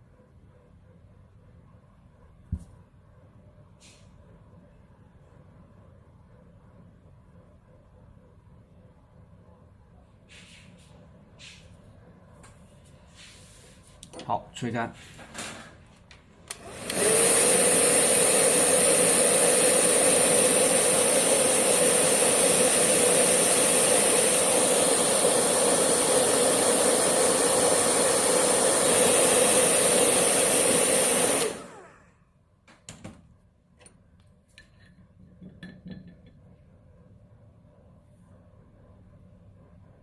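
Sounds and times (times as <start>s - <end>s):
hair dryer running: 16.5s - 32.2s.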